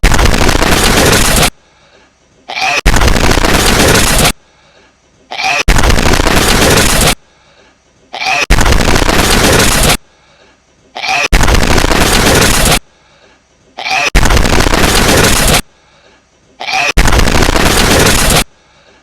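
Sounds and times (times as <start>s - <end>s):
loud distorted noise burst: 0.0s - 1.6s, 2.5s - 4.4s, 5.3s - 7.2s, 8.2s - 10.0s, 11.0s - 12.9s, 13.8s - 15.7s, 16.6s - 18.5s.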